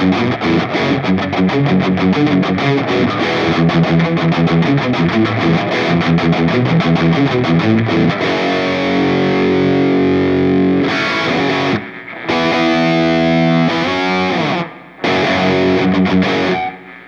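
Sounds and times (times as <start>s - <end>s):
distorted electric guitar chords: 0.0s - 17.0s.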